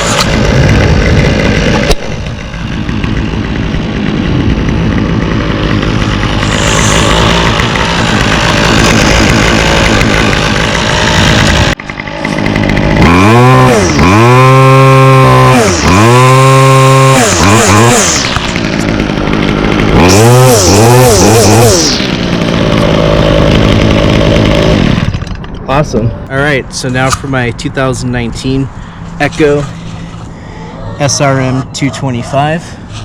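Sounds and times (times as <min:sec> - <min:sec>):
string trimmer engine revving: 0:00.0 - 0:25.9.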